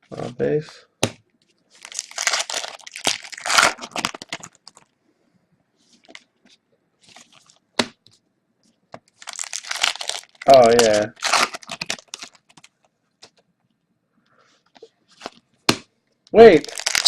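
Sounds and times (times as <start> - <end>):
foil wrapper tearing and crinkling: 1.8 - 4.8, 9.2 - 12.7, 16.6 - 17.0.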